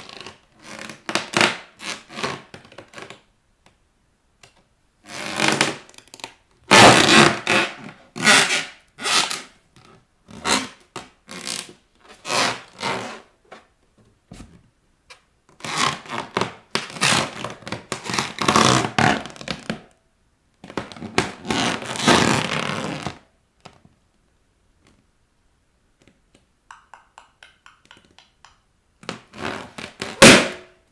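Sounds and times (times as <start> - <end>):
rubber balloons squeaking under feet: 6.7 - 9.5, 15.6 - 19.7, 20.8 - 23.2, 29.0 - 30.6.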